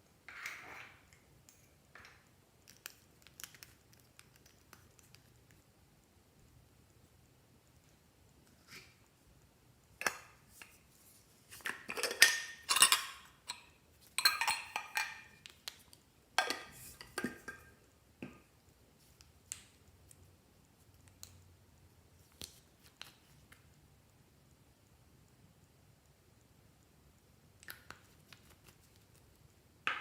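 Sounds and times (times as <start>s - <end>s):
small objects clinking in dish: 11.6s - 15.4s.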